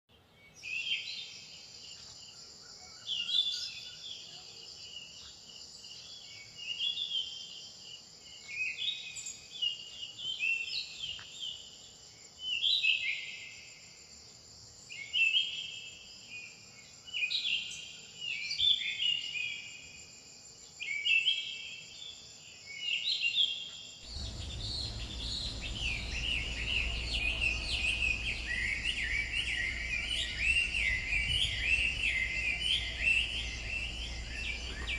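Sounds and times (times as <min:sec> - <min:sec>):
songbirds singing: 0:00.1 - 0:13.8, 0:20.7 - 0:34.9
insect drone: 0:00.5 - 0:34.9
low steady rumble: 0:24.0 - 0:34.9.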